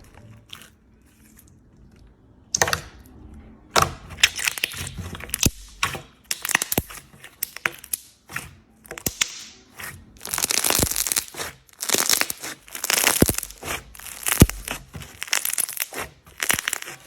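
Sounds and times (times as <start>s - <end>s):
slime crackling and crunching: 4.1s - 17.0s
slime popping and clicking: 9.0s - 9.6s.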